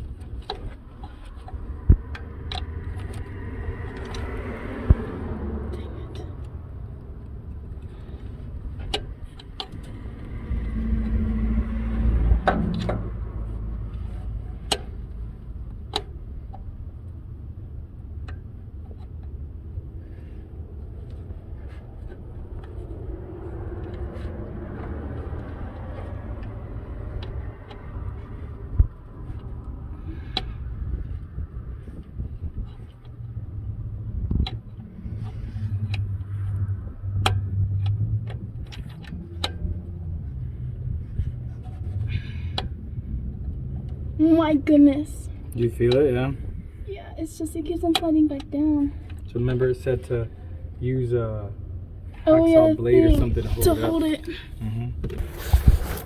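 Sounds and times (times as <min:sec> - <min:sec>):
low rumble: 0:00.9 - 0:15.5.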